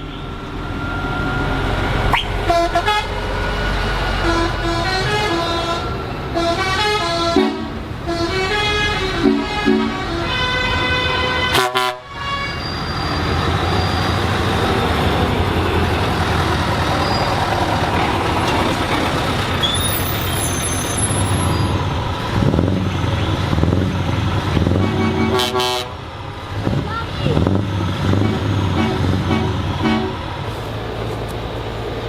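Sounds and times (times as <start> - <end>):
truck horn: 2.1 - 3.5, 4.1 - 14.2, 24.6 - 26.1, 28.0 - 30.3
truck engine running: 13.0 - 32.0.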